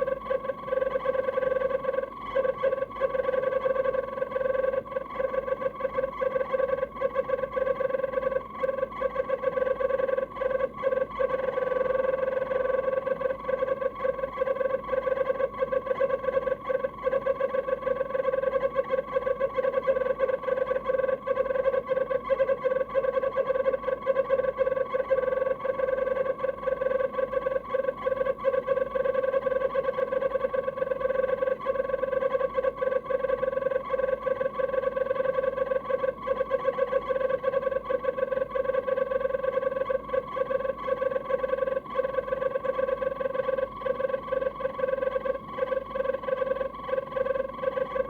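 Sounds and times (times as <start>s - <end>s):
refrigerator fan motor whine: 0.0s - 48.0s.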